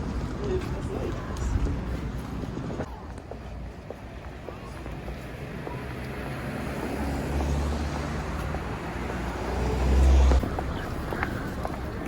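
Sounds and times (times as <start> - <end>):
road vehicle rumble: 0.0 - 12.0.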